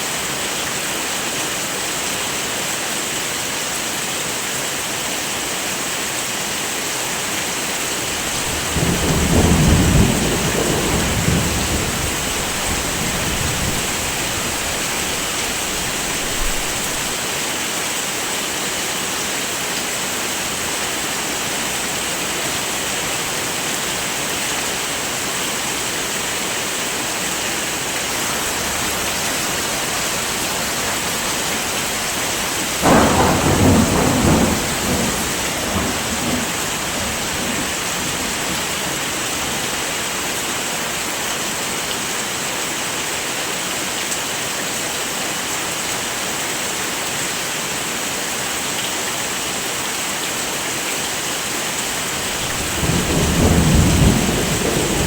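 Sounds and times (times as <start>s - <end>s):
heavy rain: 0.0s - 55.0s
thunder rumbling: 8.0s - 17.2s, 27.6s - 39.1s, 51.9s - 55.0s.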